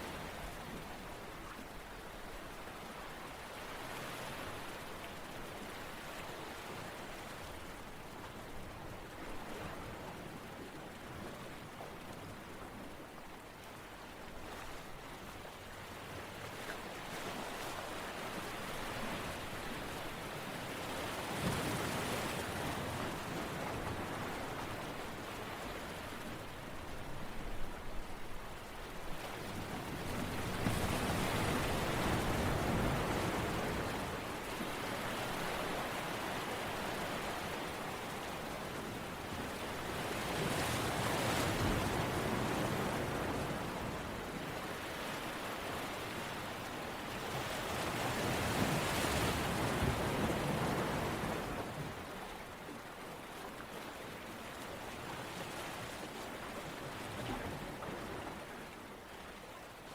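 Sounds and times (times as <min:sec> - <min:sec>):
surf breaking and washing back: 0:29.4 - 0:52.1.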